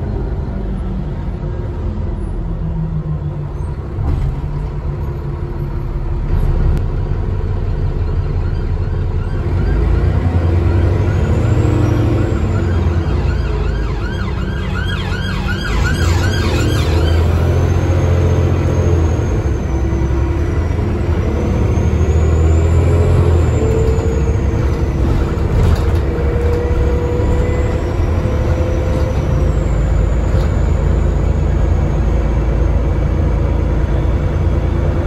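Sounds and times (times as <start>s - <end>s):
bus engine running: 0.0s - 35.0s
emergency siren yelping: 9.0s - 18.8s.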